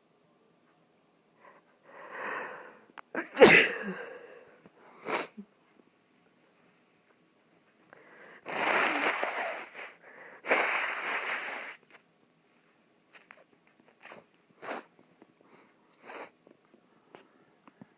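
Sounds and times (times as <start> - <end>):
person blowing nose: 5.0 - 5.4, 8.4 - 12.0, 14.0 - 14.9, 16.0 - 16.4
short sniffs: 5.0 - 5.4, 8.4 - 12.0, 14.0 - 14.9, 15.5 - 16.4.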